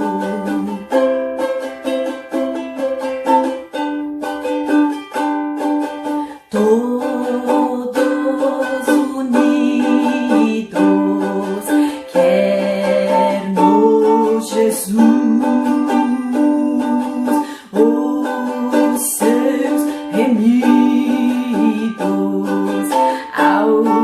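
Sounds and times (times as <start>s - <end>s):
ukulele strummed: 0.0s - 24.0s.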